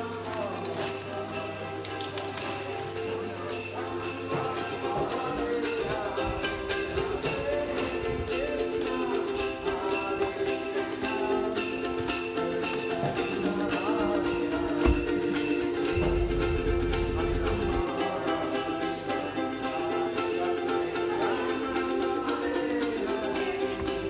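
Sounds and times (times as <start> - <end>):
steady held notes: 0.0 - 24.0.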